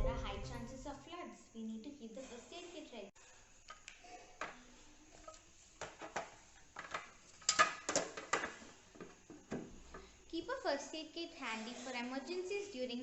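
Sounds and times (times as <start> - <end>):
small objects clicking and clattering: 3.7 - 9.4.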